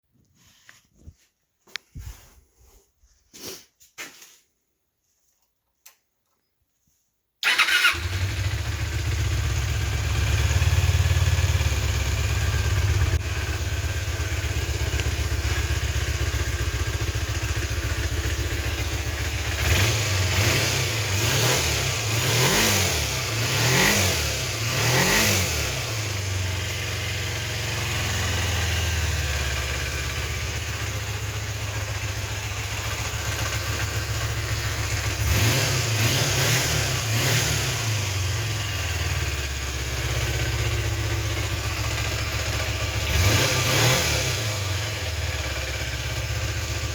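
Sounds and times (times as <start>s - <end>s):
motorcycle engine idling: 7.4s - 22.3s, 25.7s - 46.9s.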